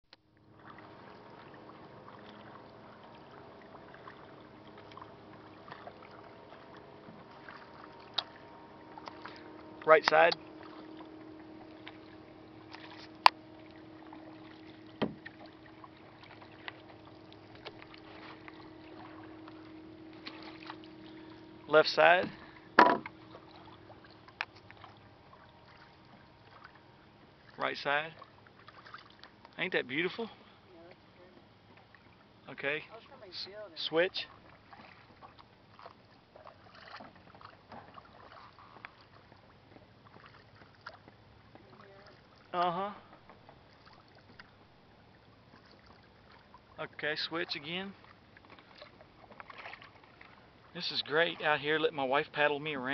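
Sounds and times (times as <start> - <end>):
faint splashes and drips: 0.2 - 29.6, 32.8 - 51.8
canoe being paddled: 0.2 - 52.9
faint hiss of water and wind: 0.2 - 52.9
paddle knocking canoe hull: 3.7 - 26.7.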